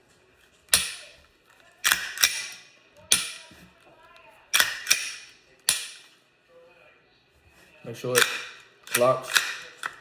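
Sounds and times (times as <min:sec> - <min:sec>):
pistol slide metallic clicks: 0:00.7 - 0:01.2, 0:01.8 - 0:03.5, 0:04.6 - 0:06.1, 0:08.2 - 0:10.0.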